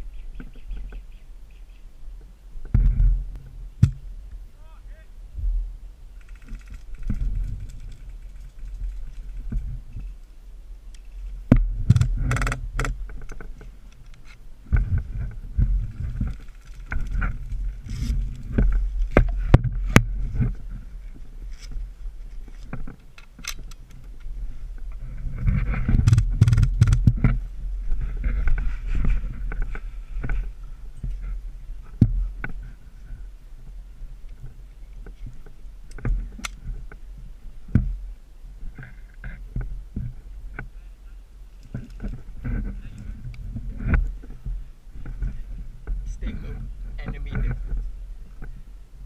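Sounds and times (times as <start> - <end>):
sharp clicks and knocks: 2.6 - 4.0, 10.9 - 15.1, 25.5 - 27.4
rustling and thumping handling noise: 2.6 - 4.1, 11.1 - 32.7.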